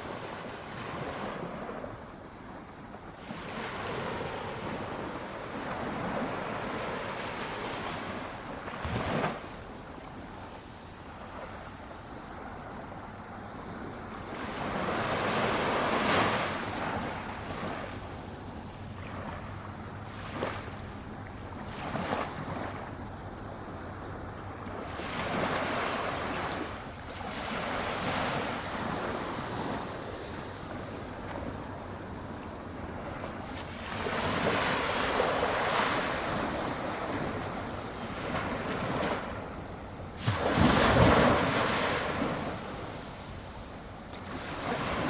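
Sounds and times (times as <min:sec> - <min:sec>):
small waves breaking on beach: 0:00.0 - 0:45.0
surf washing: 0:03.2 - 0:45.0.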